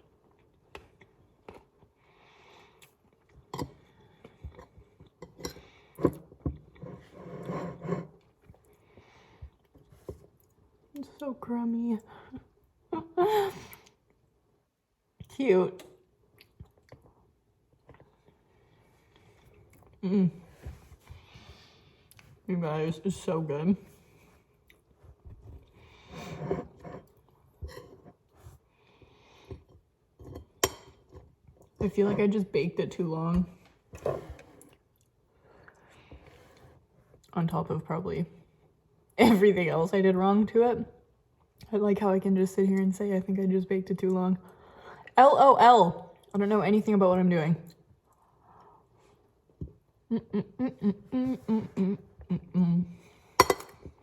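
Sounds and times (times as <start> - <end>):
breathing: 2.0 - 2.8, 5.5 - 6.1, 8.7 - 9.6, 21.0 - 22.2, 25.8 - 26.5, 28.6 - 29.8, 35.3 - 36.9, 44.4 - 45.1, 48.4 - 49.2
cutlery scraping a dish: 4.6 - 8.2, 26.1 - 28.2.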